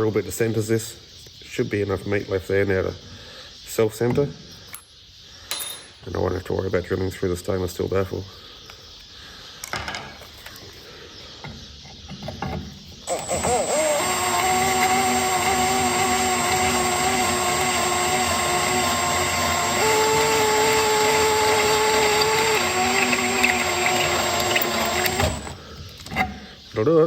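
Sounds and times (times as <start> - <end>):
power drill cutting metal: 13.1 - 25.6.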